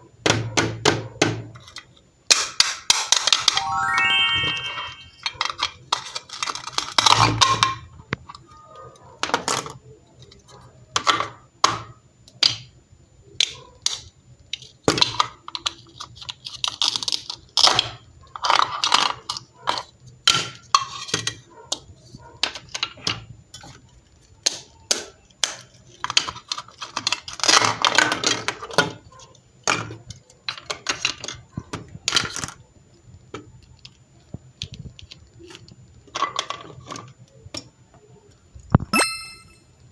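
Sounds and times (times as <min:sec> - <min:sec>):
small objects clicking and rustling: 0:05.2 - 0:11.3, 0:13.8 - 0:38.9.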